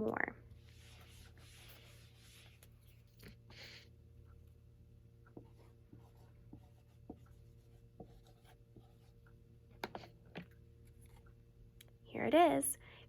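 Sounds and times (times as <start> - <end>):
low steady hum: 0.0 - 13.0
pen scratching and tapping: 8.0 - 9.1, 9.7 - 11.3.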